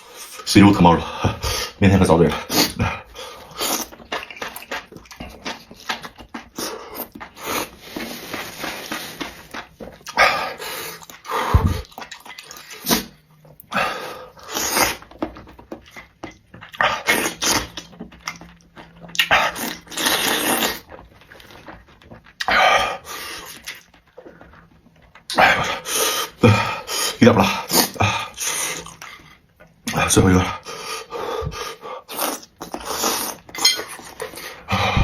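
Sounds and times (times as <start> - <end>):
person slurping and chewing: 0.0 - 35.0.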